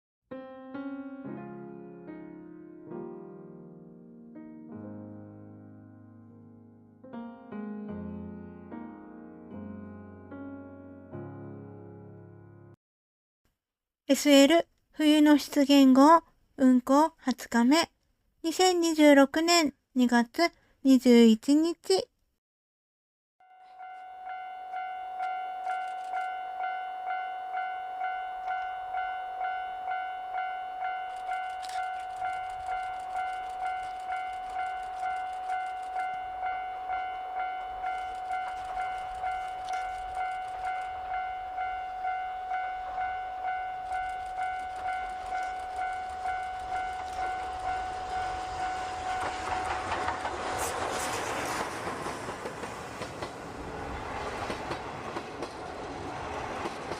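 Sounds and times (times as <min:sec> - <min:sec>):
level-crossing alarm clanging: 0:23.6 - 0:50.5
approaching steam train: 0:23.7 - 0:56.9.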